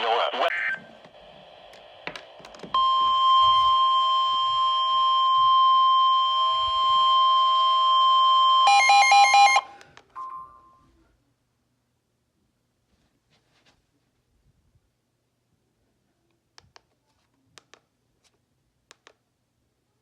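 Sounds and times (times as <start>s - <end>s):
steady warning alarm tone: 2.7s - 9.8s
brief faint tone: 10.1s - 11.0s.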